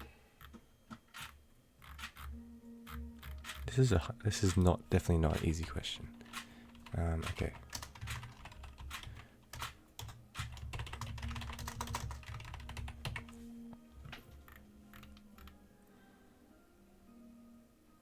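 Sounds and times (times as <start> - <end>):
soft background music: 0.0 - 18.0
typing on keyboard: 0.4 - 3.8, 5.3 - 13.4.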